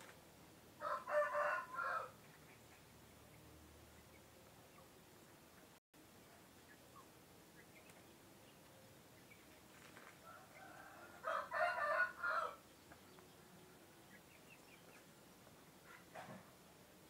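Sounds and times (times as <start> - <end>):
rooster crowing: 0.8 - 2.2, 10.2 - 12.6.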